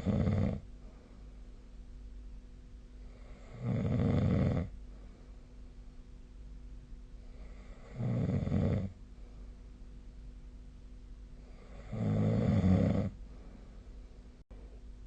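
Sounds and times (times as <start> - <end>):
person snoring: 0.0 - 0.6, 3.1 - 4.7, 7.4 - 9.0, 11.5 - 13.2
faint steady hum: 0.0 - 15.0.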